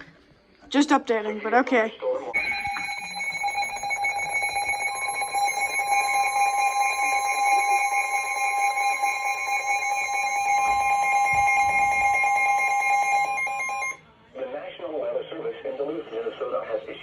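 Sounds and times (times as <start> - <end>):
alert alarm tone: 2.4 - 14.0
second alarm tone: 2.4 - 14.0.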